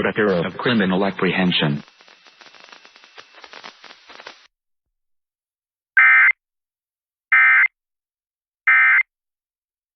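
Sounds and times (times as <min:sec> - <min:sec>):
harsh buzzing digital data bursts: 0:00.1 - 0:04.5.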